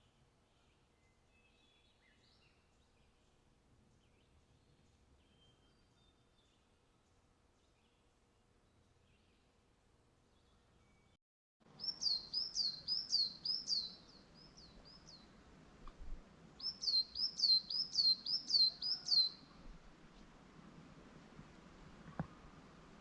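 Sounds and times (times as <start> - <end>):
faint background hiss: 0.0 - 23.0
songbird whistling: 11.8 - 15.2, 16.6 - 19.5.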